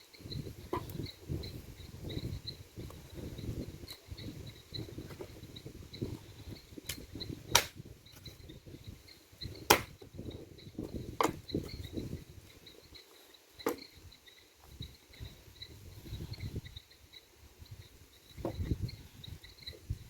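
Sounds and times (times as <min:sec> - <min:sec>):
insects chirping: 0:00.0 - 0:20.0
sharp cracks or knocks: 0:07.5 - 0:07.8.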